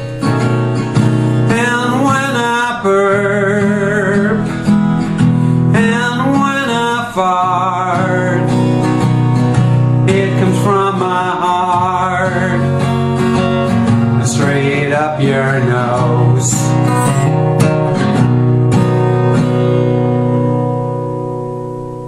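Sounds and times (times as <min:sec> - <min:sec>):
country music with acoustic guitar: 0:00.0 - 0:22.0.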